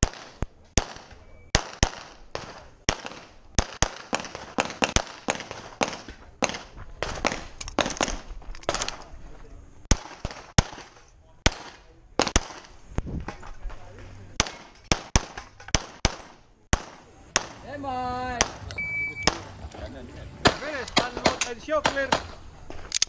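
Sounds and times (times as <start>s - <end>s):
handgun shots with echo: 20.4s - 22.4s.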